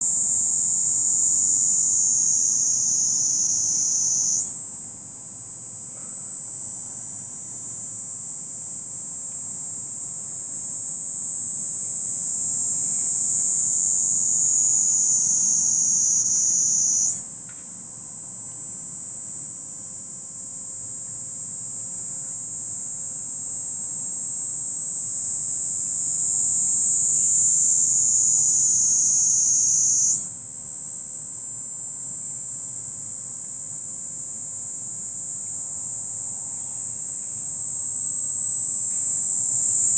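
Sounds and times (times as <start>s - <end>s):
cicada buzzing: 0.0s - 39.9s.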